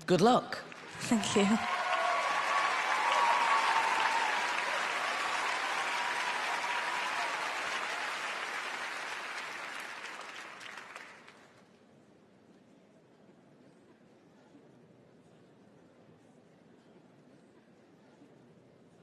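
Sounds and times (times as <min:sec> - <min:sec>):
audience applauding: 0:00.6 - 0:11.6.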